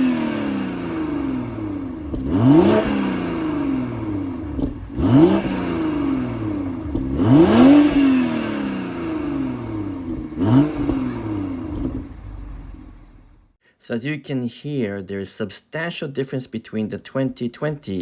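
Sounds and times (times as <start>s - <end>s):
car engine revving: 0.0s - 13.6s.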